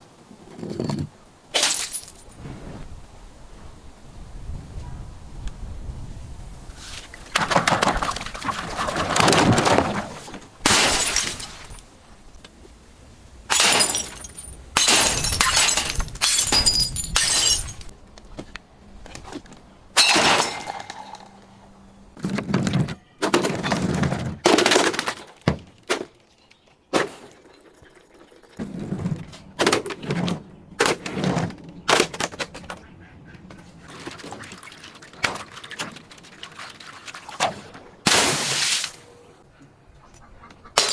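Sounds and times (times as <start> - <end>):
glass bottles crushed and shattering: 0.8 - 2.3, 9.1 - 11.8, 13.5 - 17.9, 20.0 - 21.4
glass tinkling: 13.6 - 17.9.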